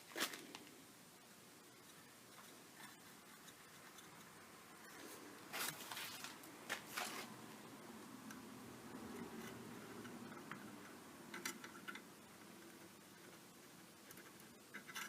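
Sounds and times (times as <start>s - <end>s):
faint clicks and knocks of tools: 9.1s - 15.0s.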